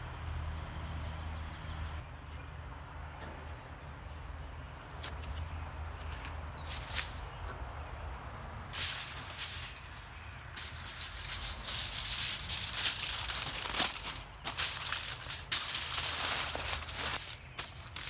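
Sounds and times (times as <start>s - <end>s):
aluminium foil crinkling: 6.7s - 7.3s, 8.8s - 18.0s.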